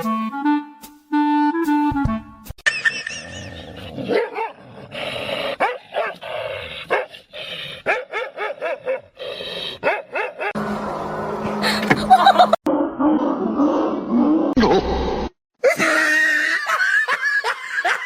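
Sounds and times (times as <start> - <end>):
dog barking and yipping: 4.1 - 4.6, 5.6 - 6.2, 6.9 - 7.1, 7.8 - 9.2, 9.8 - 10.6.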